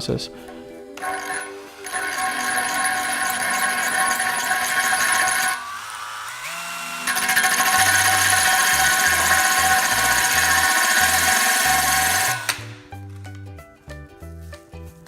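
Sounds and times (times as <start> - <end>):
hole saw grinding porcelain: 1.0 - 12.6
drill whining: 1.0 - 12.8.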